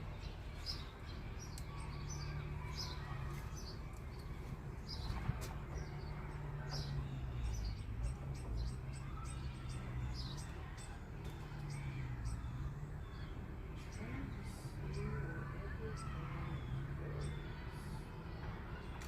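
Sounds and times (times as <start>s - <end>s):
bird chirping: 0.0s - 18.2s.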